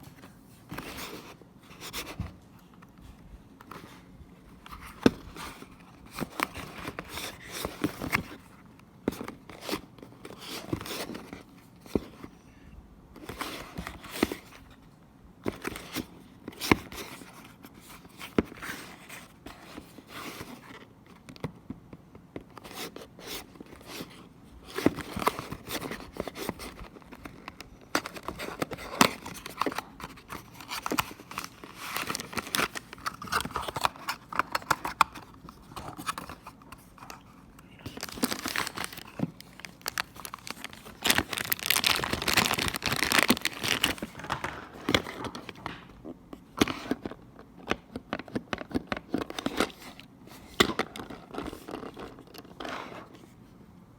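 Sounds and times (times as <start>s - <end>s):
packaging rustling and tearing: 24.7s - 45.9s.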